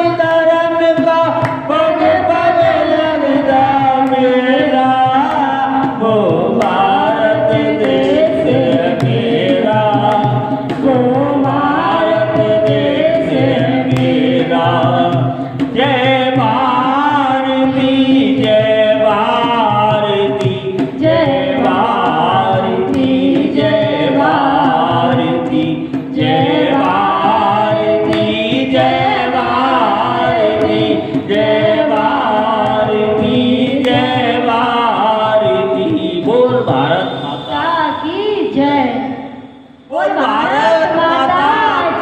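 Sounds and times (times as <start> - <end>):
group of people singing: 0.0 - 42.0.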